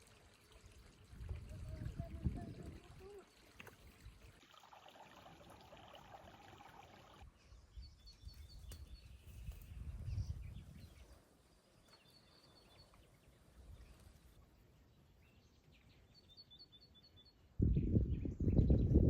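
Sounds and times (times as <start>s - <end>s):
water trickling: 0.0s - 7.2s.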